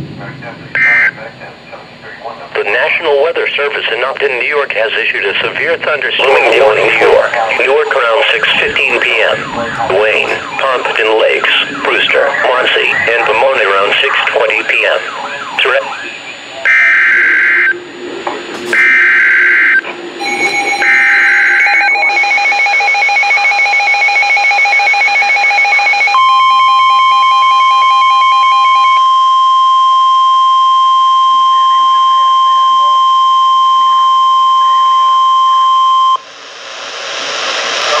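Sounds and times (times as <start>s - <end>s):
steady warning alarm tone: 0.0s - 36.3s
rapid pulsing alert beep: 0.8s - 1.2s, 18.8s - 33.8s.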